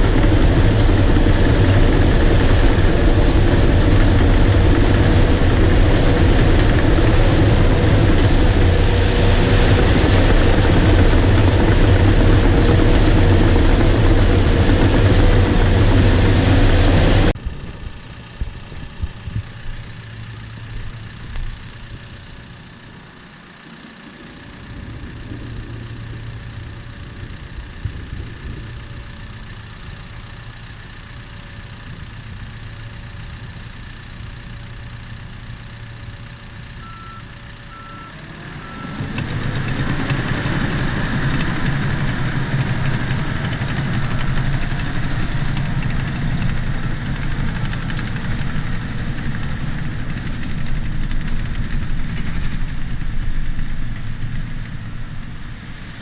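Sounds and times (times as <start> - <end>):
bulldozer diesel engine: 0.0 - 56.0
short electronic beeps: 36.8 - 39.0.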